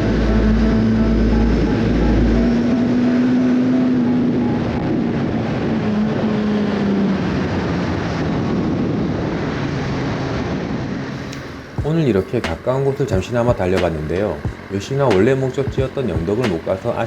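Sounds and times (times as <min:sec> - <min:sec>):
motorcycle engine running: 0:00.0 - 0:07.2, 0:11.2 - 0:17.0
wind and road noise: 0:00.0 - 0:17.0.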